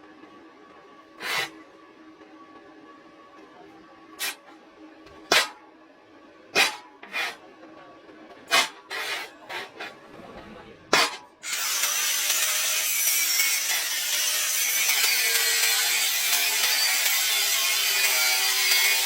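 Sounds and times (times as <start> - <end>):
harsh metalworking hiss: 1.2 - 1.6, 4.2 - 4.4.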